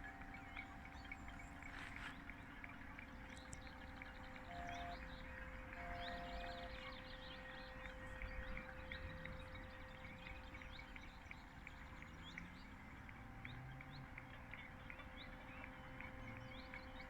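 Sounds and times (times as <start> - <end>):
small birds chirping: 0.0 - 17.0.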